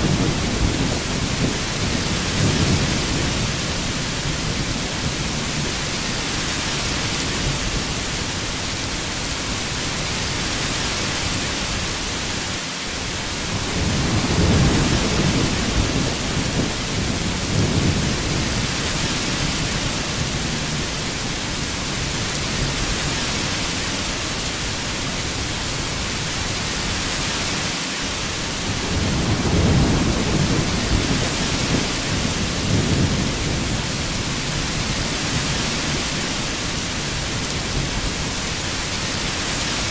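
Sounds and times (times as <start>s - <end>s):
rolling thunder: 0.0s - 5.6s, 13.5s - 21.0s, 28.6s - 36.1s
heavy rain: 0.0s - 39.9s.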